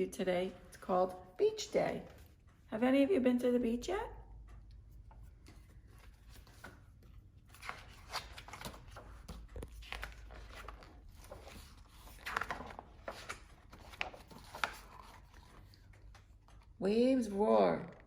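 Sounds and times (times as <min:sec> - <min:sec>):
paper pages rustling and turning: 0:05.2 - 0:16.8.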